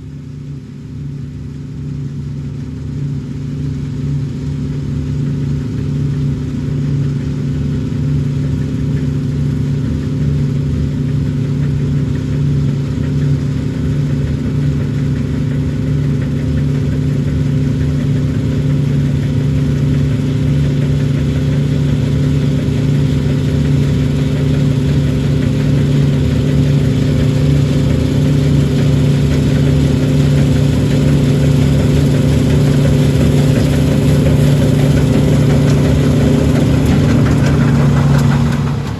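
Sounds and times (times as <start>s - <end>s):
farm machine engine running: 8.6s - 38.9s.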